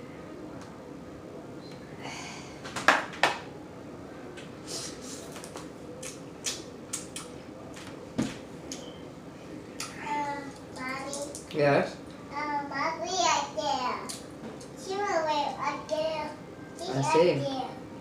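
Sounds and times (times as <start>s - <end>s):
wet mouth smacking: 5.4s - 7.4s.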